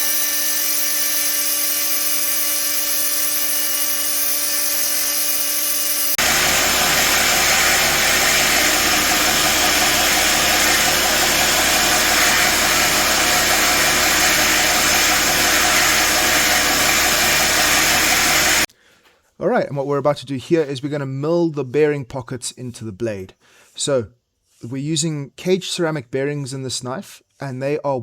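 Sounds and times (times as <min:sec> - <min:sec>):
high-pitched motor whine: 0:00.0 - 0:18.7
steady grinding noise: 0:00.0 - 0:18.7.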